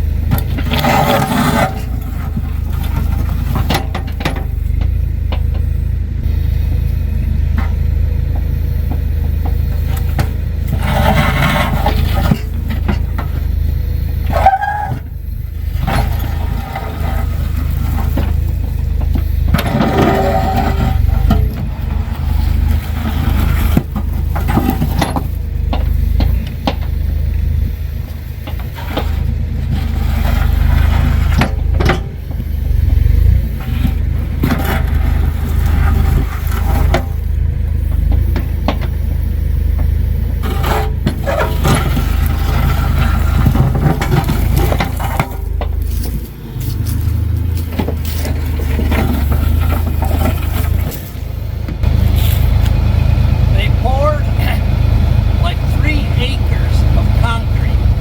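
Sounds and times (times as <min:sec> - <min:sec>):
earth-moving machine engine: 0:00.0 - 0:58.0
bucket scraping rocks: 0:00.2 - 0:04.6, 0:09.5 - 0:26.8, 0:28.5 - 0:39.1, 0:40.0 - 0:52.8, 0:55.3 - 0:58.0
stone clunks and scrapes: 0:39.8 - 0:52.4.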